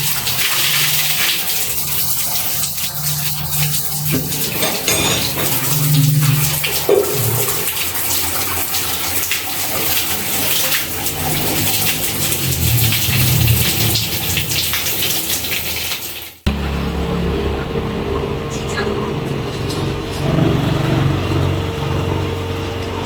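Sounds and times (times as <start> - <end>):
water gushing from a tap: 0.0 - 16.5.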